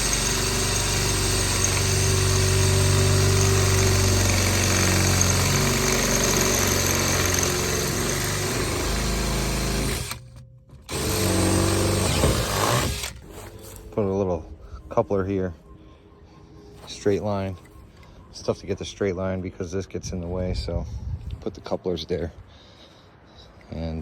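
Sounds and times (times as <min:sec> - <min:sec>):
motor running: 0:00.0 - 0:13.8.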